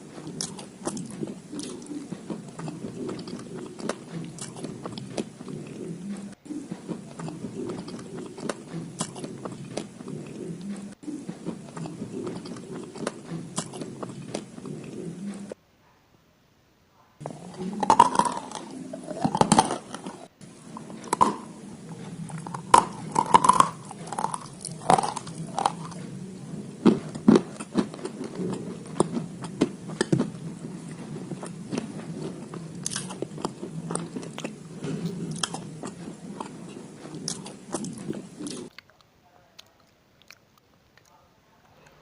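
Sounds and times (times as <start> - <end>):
chewing: 0.0 - 15.6, 17.2 - 42.0.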